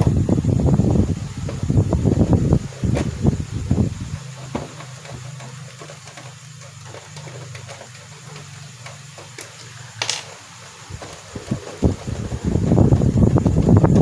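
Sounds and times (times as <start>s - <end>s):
clicks and handling noises: 4.8s - 11.8s.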